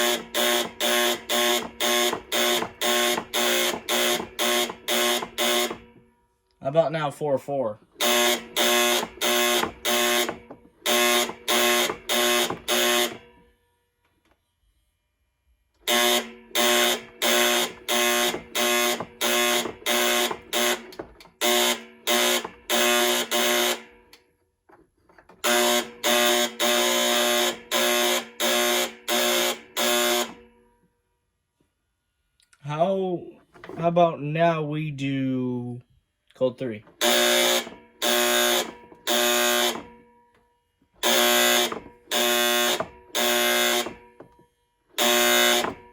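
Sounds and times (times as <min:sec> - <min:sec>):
heater safety buzzer: 0:00.0 - 0:06.2, 0:07.8 - 0:13.6, 0:15.8 - 0:24.2, 0:25.3 - 0:30.7, 0:36.9 - 0:40.2, 0:40.9 - 0:45.9.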